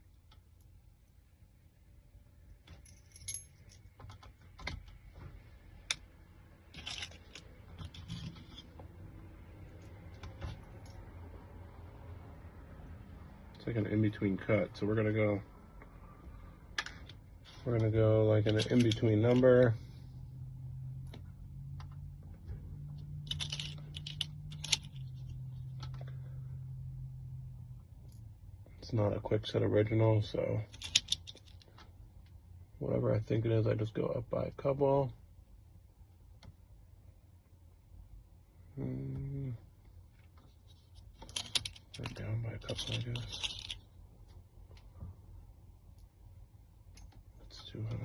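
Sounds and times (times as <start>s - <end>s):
steady low hum: 0.0s - 48.0s
metal keys clicking and jingling: 2.7s - 4.0s, 23.2s - 25.0s
small parts clicking and tapping: 6.7s - 8.8s, 23.0s - 26.1s, 30.7s - 31.9s, 41.0s - 43.8s.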